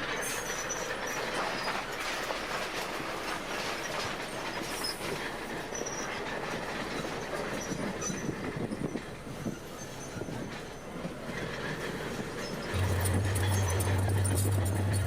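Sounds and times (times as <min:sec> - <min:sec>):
crawler tracks clanking and squealing: 0:00.0 - 0:15.0
track links squeaking: 0:03.6 - 0:15.0
diesel engine rumble: 0:12.7 - 0:15.0.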